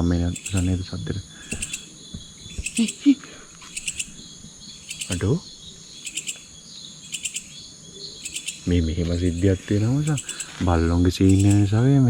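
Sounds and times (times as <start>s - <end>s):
insects buzzing: 0.0s - 12.0s
pulsed insect chirps: 0.0s - 12.0s.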